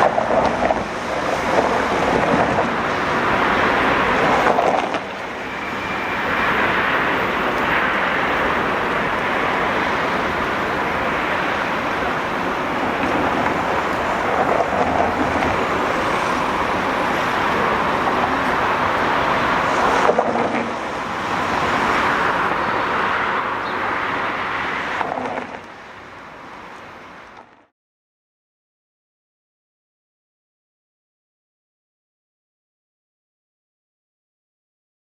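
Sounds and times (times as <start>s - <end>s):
road traffic: 0.0s - 27.7s
tram running on track: 0.0s - 27.7s.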